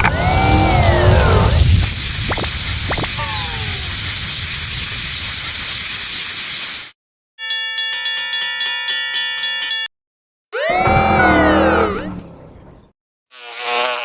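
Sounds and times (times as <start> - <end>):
loud steady hiss: 1.5 - 7.0
electronic bell-like dings: 7.4 - 9.9.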